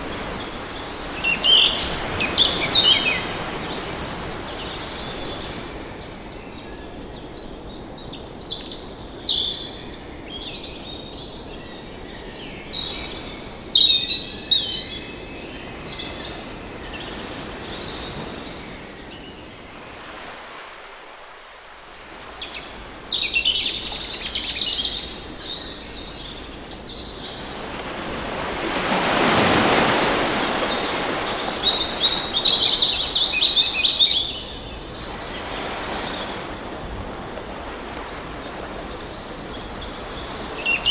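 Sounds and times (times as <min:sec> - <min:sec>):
surf surging: 0:00.0 - 0:06.2, 0:19.5 - 0:40.9.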